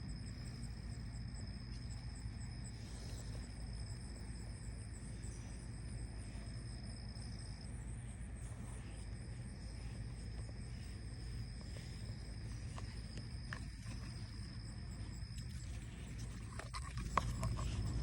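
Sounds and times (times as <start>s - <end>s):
crickets trilling: 0.0s - 18.0s
faint low rumble: 0.0s - 18.0s.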